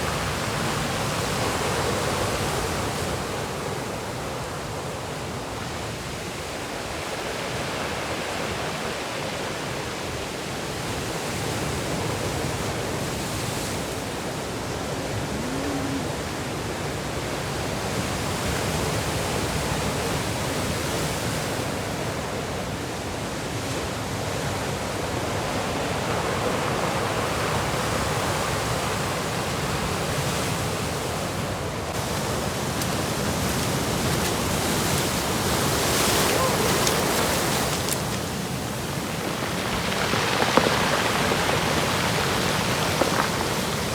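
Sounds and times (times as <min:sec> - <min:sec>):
waves breaking: 0:10.9 - 0:43.9.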